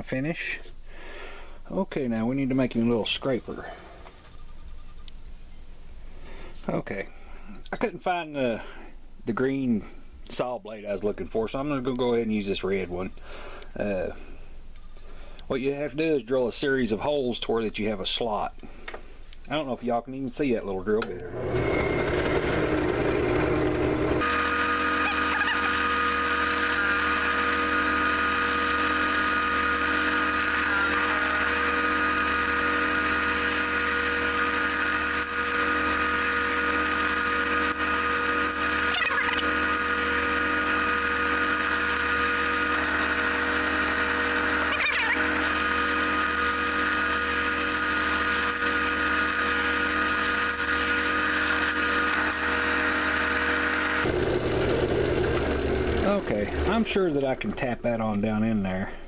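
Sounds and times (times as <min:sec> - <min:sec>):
electric drill motor running: 0:21.2 - 0:56.8.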